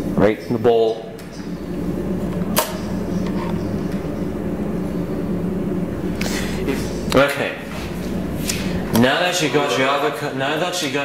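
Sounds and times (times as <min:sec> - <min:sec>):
steady machine hum: 0:00.0 - 0:11.0
sharp click: 0:02.6 - 0:02.8.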